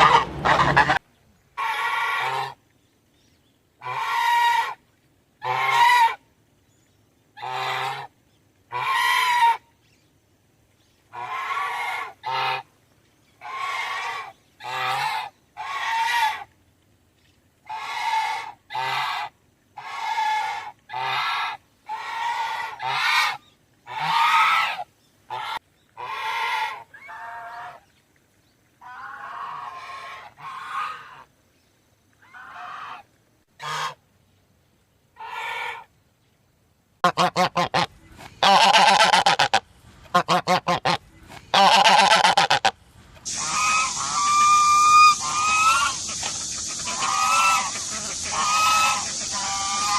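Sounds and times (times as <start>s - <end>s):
goose honking: 0.0s - 1.0s, 3.8s - 4.8s, 5.4s - 6.2s, 8.7s - 9.6s, 11.1s - 12.7s, 17.7s - 27.8s, 33.6s - 34.0s, 37.0s - 49.9s.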